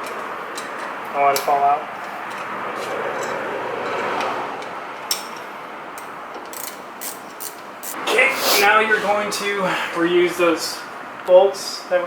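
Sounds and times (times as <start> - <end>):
steady hiss: 7.8 - 10.1.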